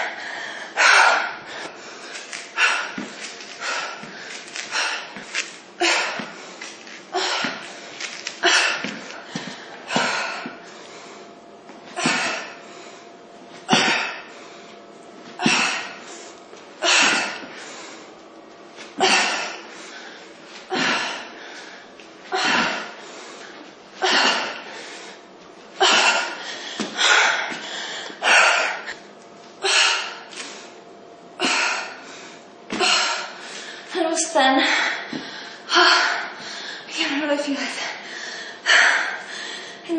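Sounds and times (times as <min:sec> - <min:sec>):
woman exhaling forcefully: 0:12.0 - 0:12.6, 0:15.4 - 0:16.1, 0:20.7 - 0:23.0, 0:24.0 - 0:25.2.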